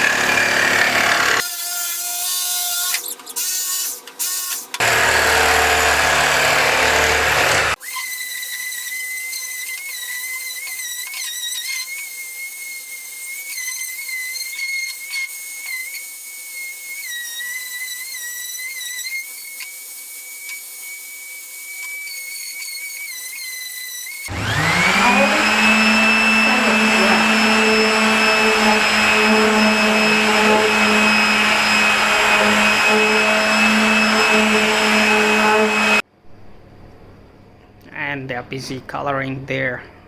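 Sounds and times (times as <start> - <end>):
electric motor whining: 4.5 - 8.2, 19.2 - 36.0.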